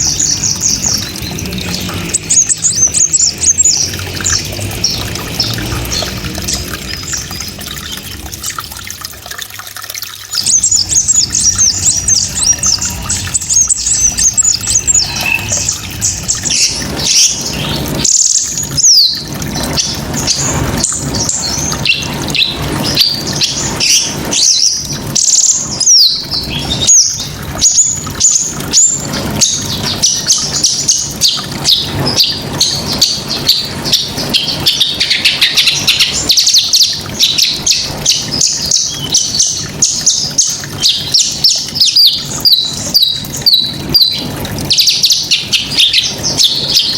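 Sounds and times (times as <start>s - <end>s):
songbird singing rapid chirps and trills: 10.0s - 46.9s.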